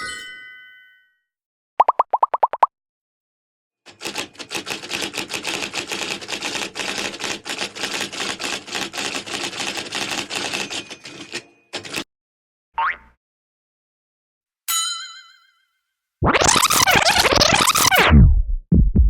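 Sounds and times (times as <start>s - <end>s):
rapid mechanical clicking: 3.9s - 12.0s.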